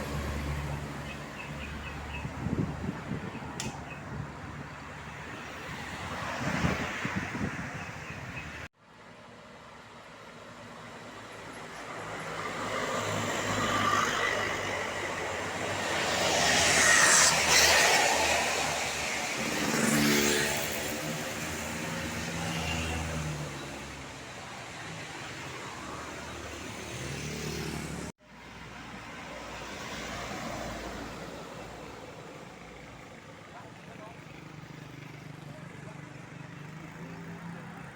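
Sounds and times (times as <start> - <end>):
bus passing on road: 0.0 - 37.9.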